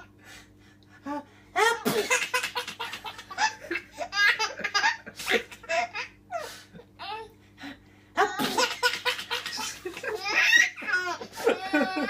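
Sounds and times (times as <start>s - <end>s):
baby laughing and giggling: 8.2s - 12.0s.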